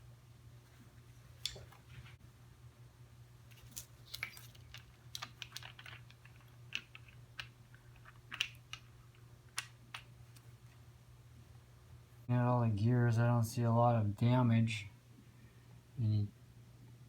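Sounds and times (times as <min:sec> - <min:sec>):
small metal parts clinking: 0:03.5 - 0:09.2.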